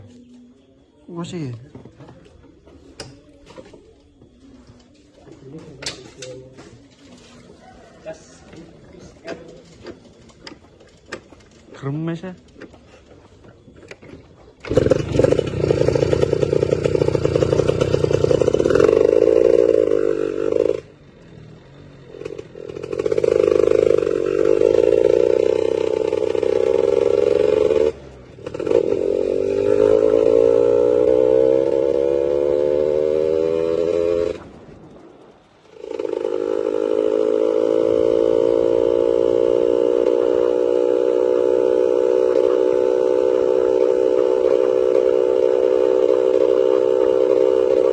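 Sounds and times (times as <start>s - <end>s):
two-stroke engine revving: 14.6s - 47.9s.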